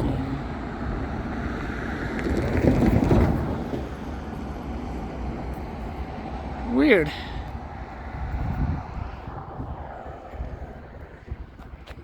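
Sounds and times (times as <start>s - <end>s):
vehicle rumble: 0.0s - 12.0s.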